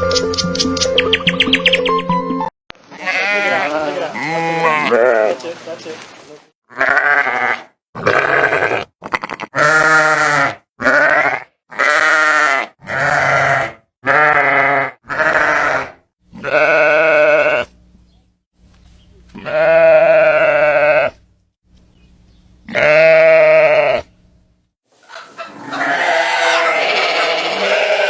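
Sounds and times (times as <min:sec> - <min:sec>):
animal calling: 0:02.9 - 0:09.8, 0:25.0 - 0:28.0.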